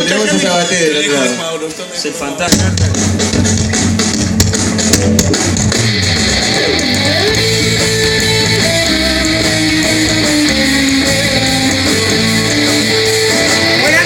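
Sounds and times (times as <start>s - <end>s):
slide electric guitar notes: 5.0s - 14.0s.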